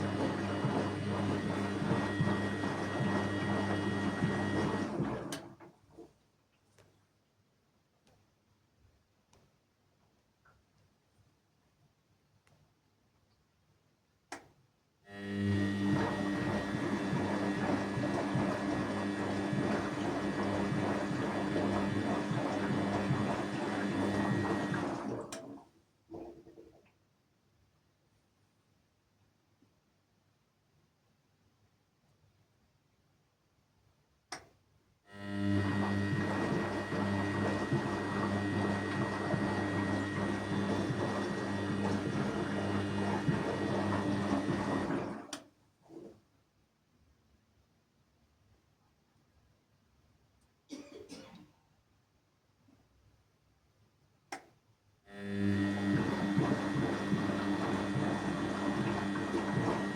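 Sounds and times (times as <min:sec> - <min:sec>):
washing machine running: 0:00.0 - 0:05.7, 0:15.1 - 0:26.6, 0:35.1 - 0:46.1, 0:55.1 - 0:59.9.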